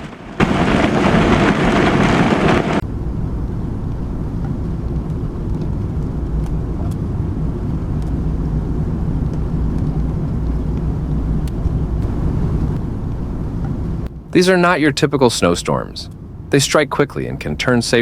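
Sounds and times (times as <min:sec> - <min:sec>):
low outdoor rumble: 0:00.0 - 0:18.0.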